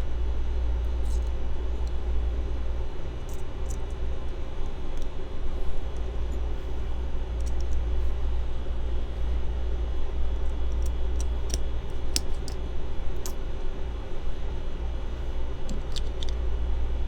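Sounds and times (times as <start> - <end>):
low background rumble: 0.0 - 17.0
small metal parts clicking: 3.2 - 4.0, 10.6 - 13.4, 15.7 - 16.4.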